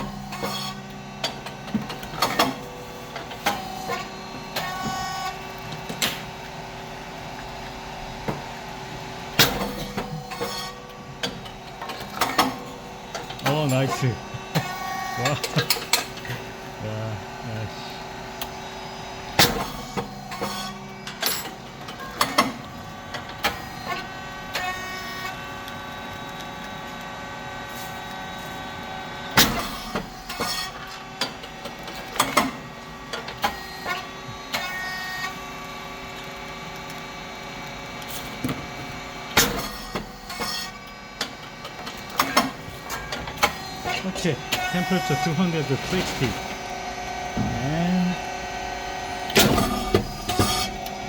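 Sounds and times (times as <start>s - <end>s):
hydraulic pump hum: 0.0s - 27.0s, 37.9s - 51.0s.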